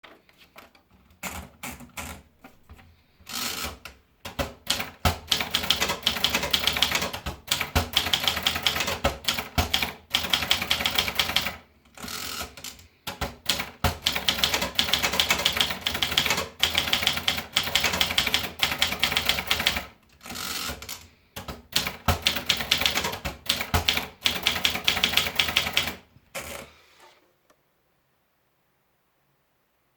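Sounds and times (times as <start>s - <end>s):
typewriter keystrokes: 3.3s - 26.7s.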